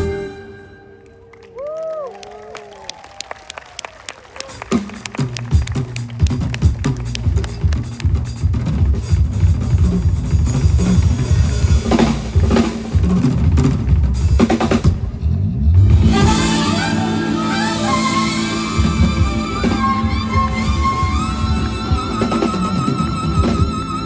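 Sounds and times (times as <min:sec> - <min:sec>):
drum kit playing busily: 0:04.4 - 0:24.0
melody with sliding notes: 0:15.9 - 0:24.0.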